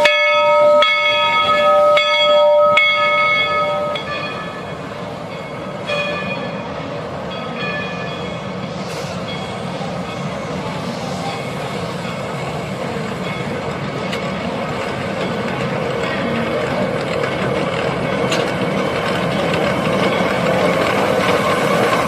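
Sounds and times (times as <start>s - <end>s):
locomotive bell ringing: 0.0s - 22.0s
train rumbling on track: 0.0s - 22.0s.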